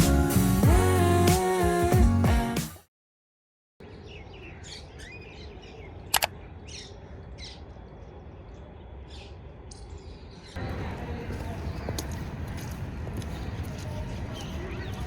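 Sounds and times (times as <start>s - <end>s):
low outdoor background hum: 3.8s - 15.0s
small birds chirping: 11.3s - 15.0s.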